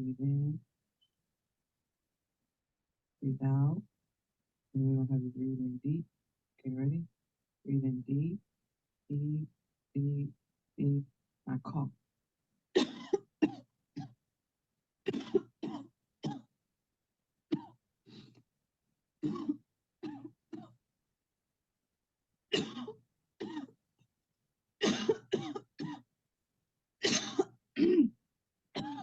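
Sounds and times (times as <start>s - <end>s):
person coughing: 12.8s - 14.2s, 15.1s - 16.5s, 19.2s - 20.7s, 22.6s - 23.8s, 24.8s - 26.0s, 27.0s - 28.2s, 28.8s - 29.0s.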